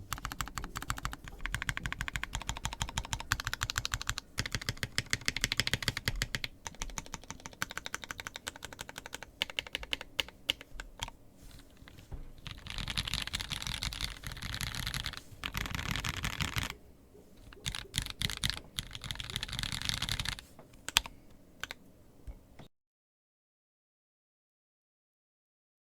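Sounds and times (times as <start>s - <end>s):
mechanical keyboard typing: 0.0s - 11.2s, 12.4s - 16.8s, 17.4s - 21.8s.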